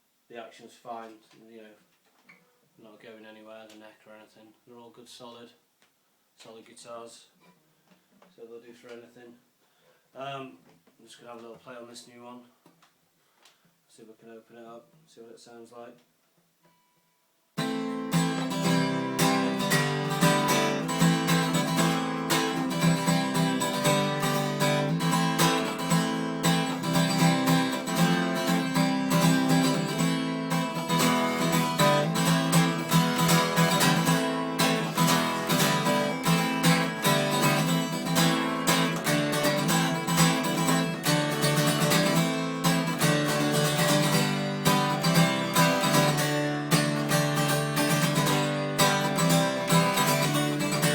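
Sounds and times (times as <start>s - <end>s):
acoustic guitar strumming: 17.6s - 50.9s.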